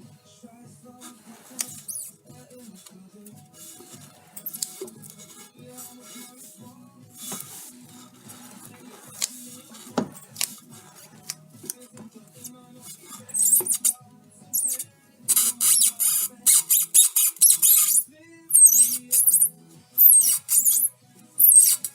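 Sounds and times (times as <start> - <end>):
universal joint squeaking and creaking: 1.0 - 21.9.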